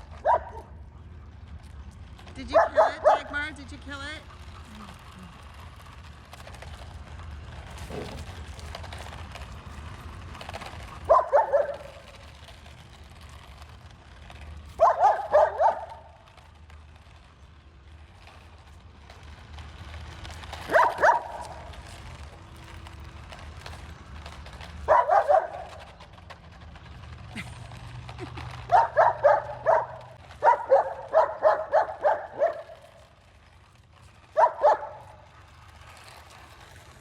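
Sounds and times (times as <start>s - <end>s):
puppy barking: 0.1s - 0.8s, 2.4s - 3.4s, 10.9s - 12.2s, 14.7s - 16.1s, 20.6s - 21.7s, 24.8s - 25.8s, 28.6s - 32.9s, 34.4s - 35.2s.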